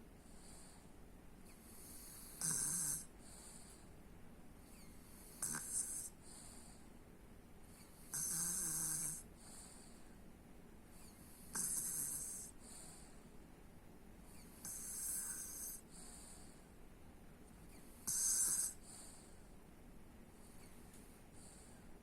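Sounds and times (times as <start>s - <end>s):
person snoring: 2.2s - 3.1s, 5.4s - 6.1s, 8.1s - 9.2s, 11.5s - 12.6s, 18.1s - 18.8s.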